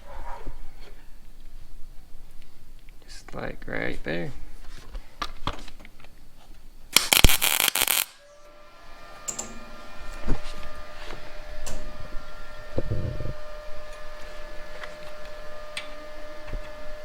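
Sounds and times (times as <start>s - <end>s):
loud crackling hiss: 7.0s - 8.2s
steady hum: 7.0s - 8.5s.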